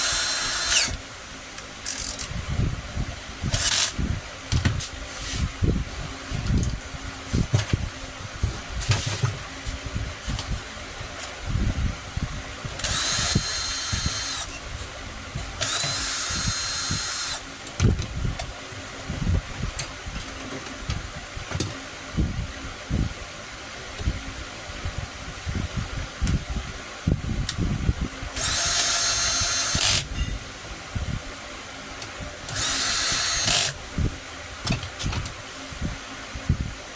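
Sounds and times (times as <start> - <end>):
power tool motor whine: 0.0 - 1.0, 12.8 - 14.6, 15.6 - 17.4, 28.4 - 30.1, 32.5 - 33.8.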